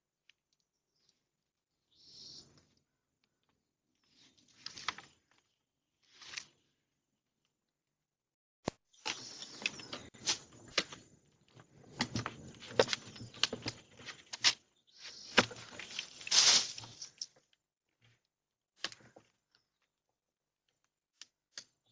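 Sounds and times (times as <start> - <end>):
branches rustling and snapping: 4.1 - 6.6, 8.9 - 17.6.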